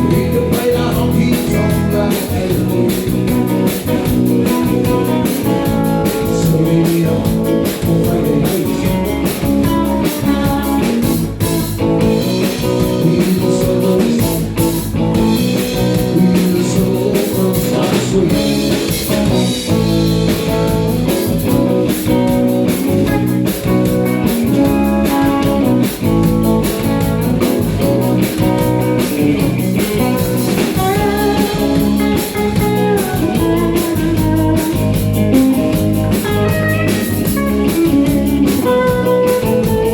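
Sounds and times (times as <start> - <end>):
live country band playing: 0.0 - 39.9.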